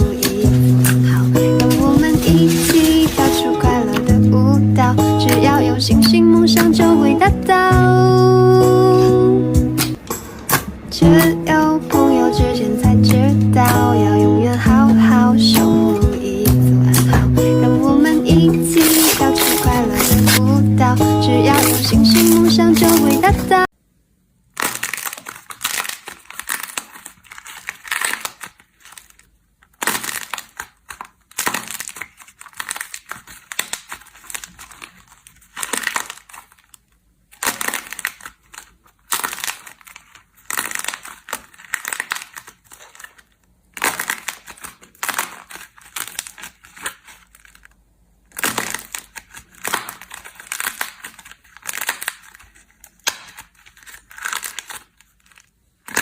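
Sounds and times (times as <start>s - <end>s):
slime crackling and popping: 24.5s - 47.7s, 48.3s - 56.0s.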